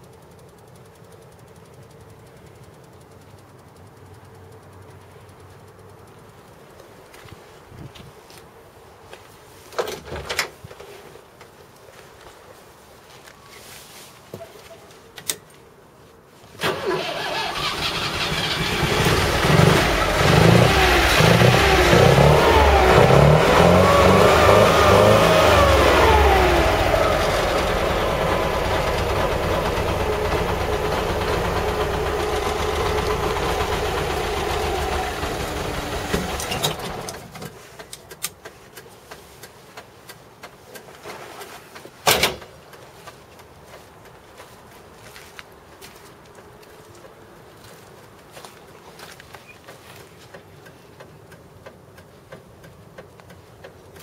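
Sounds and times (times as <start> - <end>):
engine starting and revving: 16.6 - 37.4.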